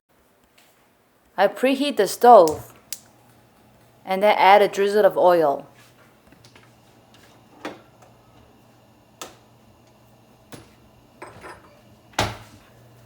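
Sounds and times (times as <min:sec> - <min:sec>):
kitchen things clicking and tapping: 0:09.2 - 0:12.7.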